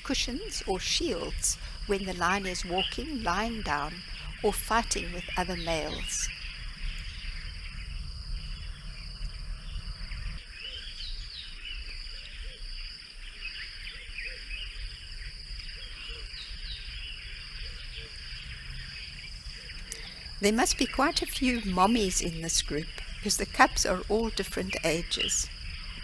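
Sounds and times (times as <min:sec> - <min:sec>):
high-pitched insect chorus: 0:00.0 - 0:26.0
low rumble: 0:06.2 - 0:10.4.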